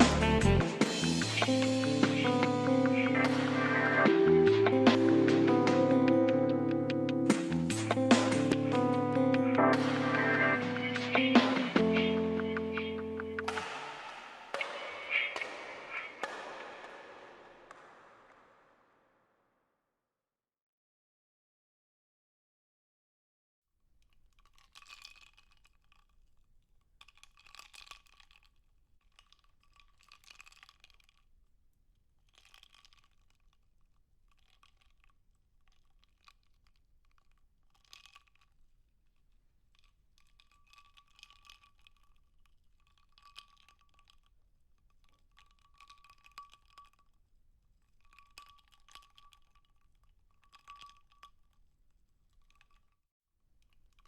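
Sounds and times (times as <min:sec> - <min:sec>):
rapid clicking and crackling: 0:07.3 - 0:18.4.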